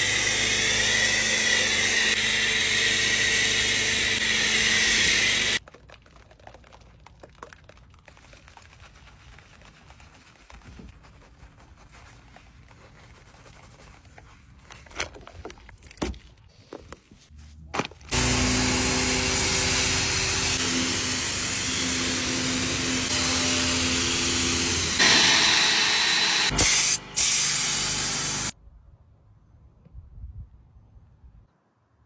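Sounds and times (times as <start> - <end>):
pressure washer spraying water: 0.0 - 5.6, 18.1 - 28.6.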